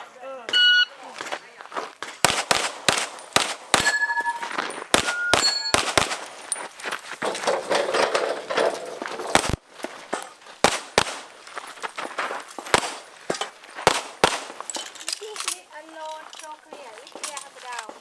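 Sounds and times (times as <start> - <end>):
handgun shots: 2.0 - 6.5, 9.3 - 11.3, 12.6 - 15.6
steel targets ringing when hit: 3.8 - 5.9.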